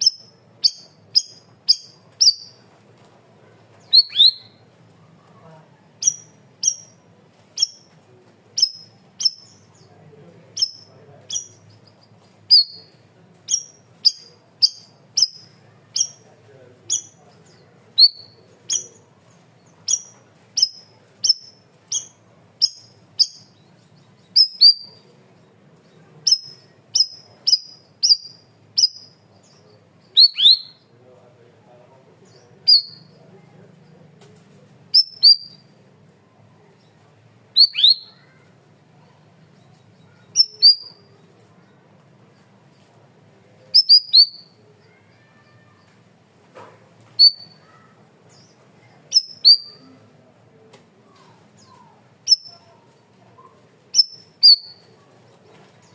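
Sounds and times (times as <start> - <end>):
songbird calling in high notes: 37.6 - 38.3.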